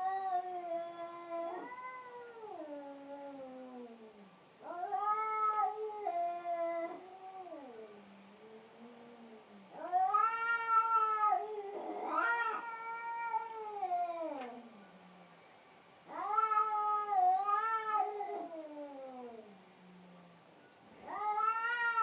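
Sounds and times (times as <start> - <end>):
cat yowling: 0.0 - 4.0, 4.6 - 7.9, 9.7 - 14.6, 16.1 - 19.5, 21.0 - 22.0.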